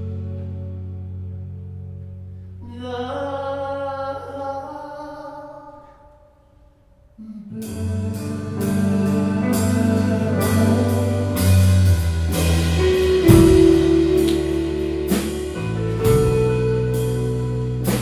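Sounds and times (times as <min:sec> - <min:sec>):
rock band playing: 0:08.0 - 0:18.0
drum and cymbal hits: 0:09.4 - 0:18.0.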